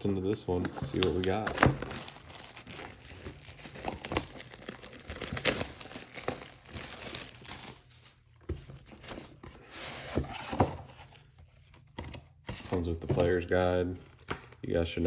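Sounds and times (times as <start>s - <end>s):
plastic shrink wrap crinkling: 0.0s - 8.2s.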